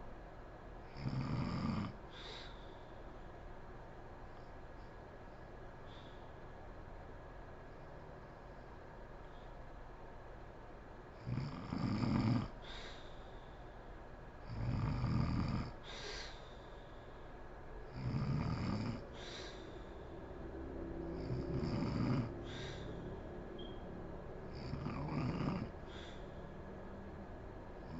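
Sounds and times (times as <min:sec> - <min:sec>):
woman snoring: 0:01.0 - 0:02.0, 0:11.2 - 0:12.6, 0:14.5 - 0:16.3, 0:17.9 - 0:19.7, 0:20.9 - 0:23.1, 0:24.5 - 0:26.3.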